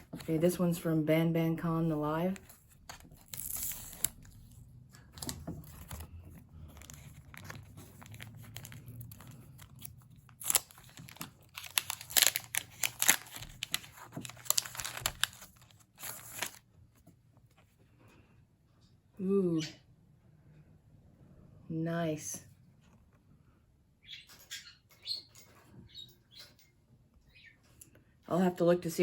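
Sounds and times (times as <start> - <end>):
packaging crinkling and tearing: 2.4 - 16.7.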